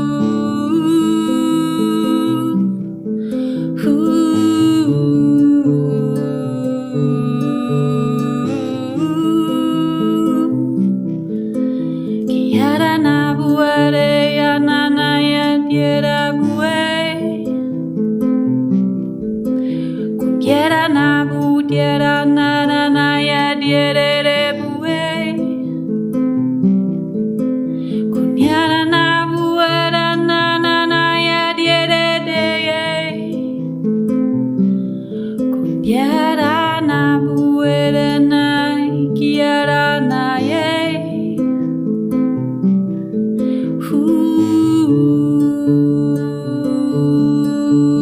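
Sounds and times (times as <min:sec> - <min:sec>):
wordless singing voice: 0:00.0 - 0:02.8, 0:03.5 - 0:10.9, 0:12.2 - 0:17.4, 0:20.4 - 0:25.5, 0:28.1 - 0:33.4, 0:35.6 - 0:41.3, 0:43.6 - 0:48.0
plucked harp pattern: 0:00.0 - 0:48.0.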